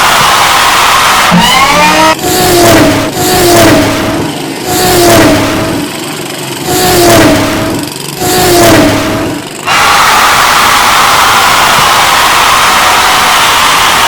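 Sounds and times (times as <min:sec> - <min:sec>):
engine whines falling in pitch: 0:00.2 - 0:14.0
race car engine revving: 0:01.3 - 0:09.7.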